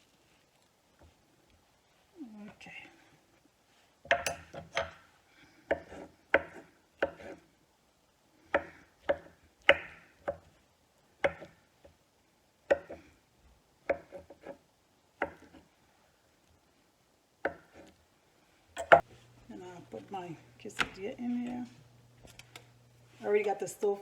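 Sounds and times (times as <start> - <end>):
knife chopping on cutting board: 5.7 - 7.4, 8.5 - 10.5, 11.2 - 11.6, 12.7 - 13.0, 13.9 - 14.6, 15.2 - 15.7, 17.4 - 17.9, 18.8 - 19.1.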